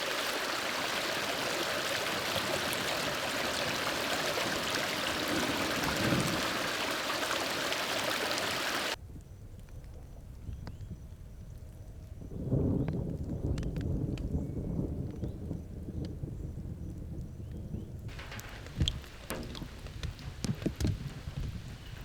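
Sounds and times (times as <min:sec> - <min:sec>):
steady rain falling: 0:00.0 - 0:09.0, 0:18.0 - 0:22.0
low rumble: 0:18.1 - 0:22.0.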